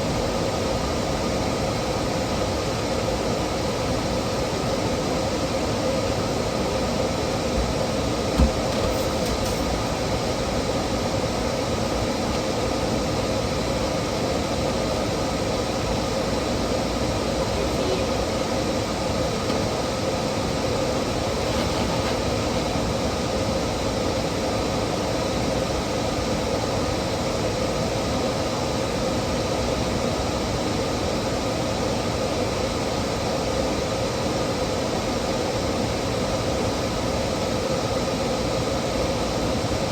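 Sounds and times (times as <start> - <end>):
constant hum: 0.0 - 33.6
mechanical hiss: 8.4 - 10.4.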